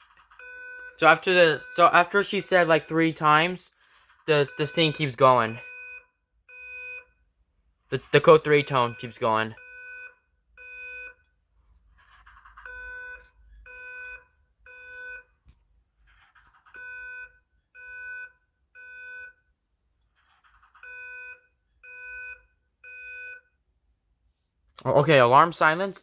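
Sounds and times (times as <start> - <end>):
fire alarm evacuation beeps: 0.3 - 7.2, 8.0 - 11.2, 12.6 - 15.3, 16.7 - 19.4, 20.8 - 23.5.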